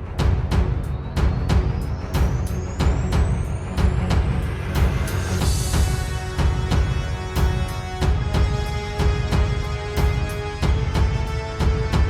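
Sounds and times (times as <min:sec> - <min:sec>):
dramatic soundtrack music: 0:00.0 - 0:12.0
heavy drum hits: 0:02.8 - 0:12.0.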